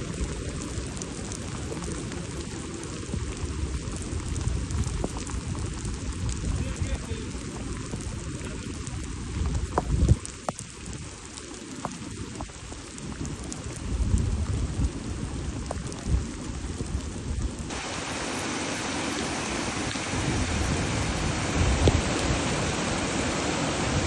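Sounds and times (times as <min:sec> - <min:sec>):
heavy rain pouring: 0:00.0 - 0:24.0
low rumbles: 0:13.8 - 0:24.0.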